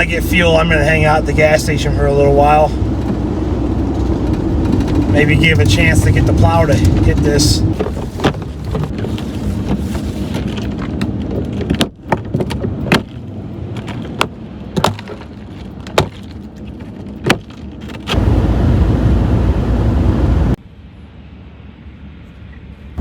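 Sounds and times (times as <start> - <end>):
road and engine rumble: 0.0 - 23.0
sharp clicks and knocks: 3.9 - 5.2.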